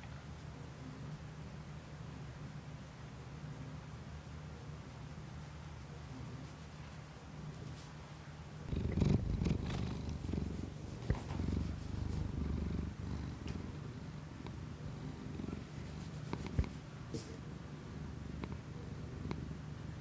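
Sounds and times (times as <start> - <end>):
cat purring: 8.7 - 20.0.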